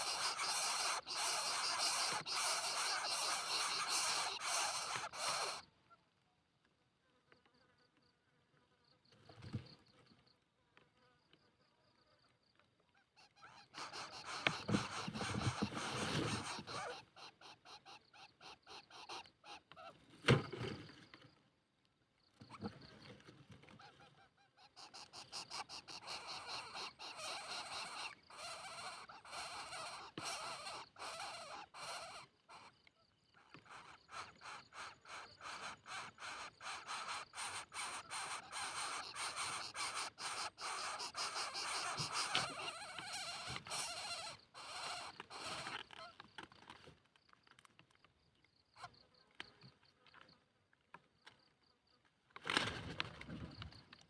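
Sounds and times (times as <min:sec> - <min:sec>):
bird chick harsh pulsed calls: 0:00.0 - 0:05.7, 0:13.3 - 0:19.9, 0:23.9 - 0:32.7, 0:33.6 - 0:45.8.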